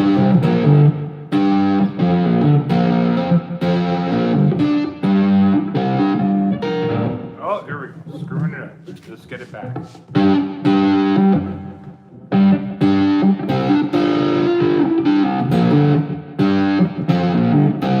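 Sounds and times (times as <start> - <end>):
electric guitar chords: 0.0 - 7.4, 10.1 - 18.0.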